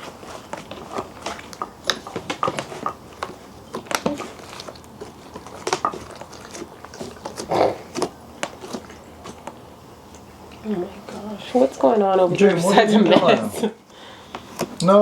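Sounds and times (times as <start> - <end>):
objects clicking and tapping: 0.4 - 10.6.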